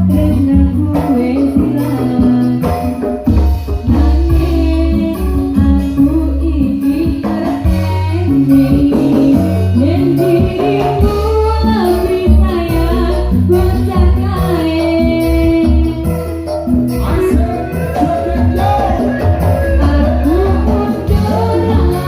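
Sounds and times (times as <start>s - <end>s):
electronic keyboard band music: 0.0s - 22.0s.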